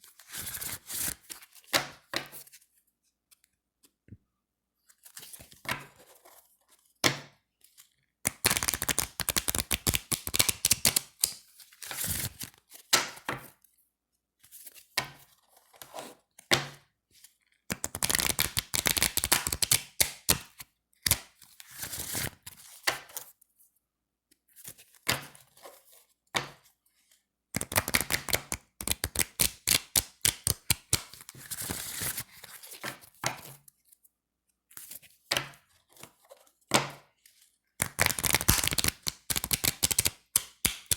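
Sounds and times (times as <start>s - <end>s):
cards being shuffled: 8.3s - 12.6s, 17.7s - 22.4s, 27.6s - 33.0s, 37.8s - 40.9s.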